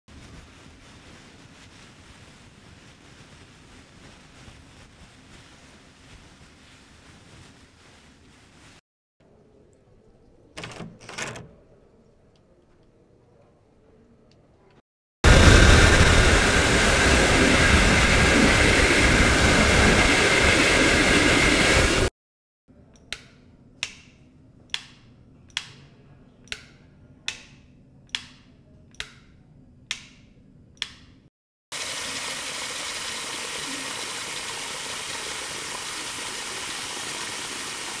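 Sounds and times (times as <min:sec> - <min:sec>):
loud rushing noise: 0:15.3 - 0:22.1.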